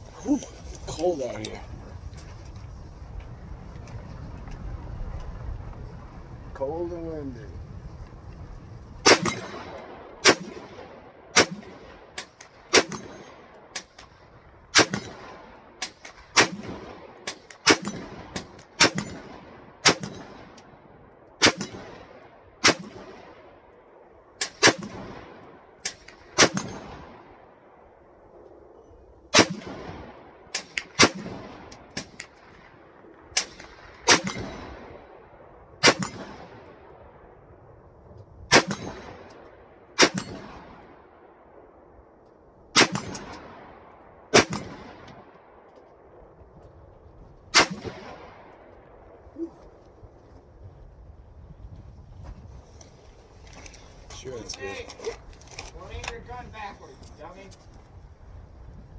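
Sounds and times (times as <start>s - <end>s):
rifle shots echoing: 9.0s - 27.9s, 29.3s - 37.0s, 38.5s - 41.5s, 42.7s - 45.7s, 47.5s - 49.2s.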